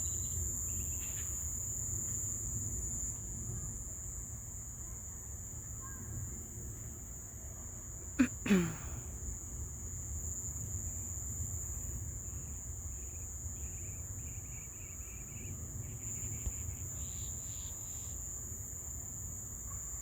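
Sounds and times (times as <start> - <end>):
higher insect chirping: 10.4 - 19.4
insects rapid chirps: 11.6 - 18.7
insects shrill drone: 11.8 - 18.5.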